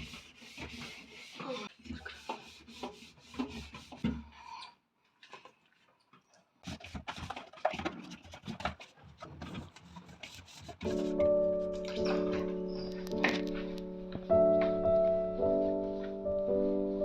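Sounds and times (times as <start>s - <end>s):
objects clicking and knocking: 6.7s - 11.3s.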